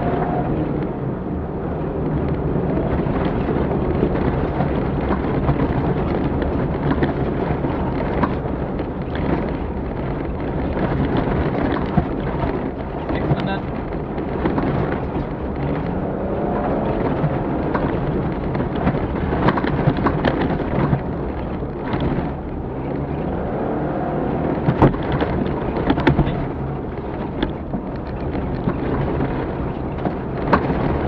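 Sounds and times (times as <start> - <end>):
rally car engine under load: 0.0 - 31.0
knocks and rattles: 2.0 - 23.4, 24.3 - 31.0.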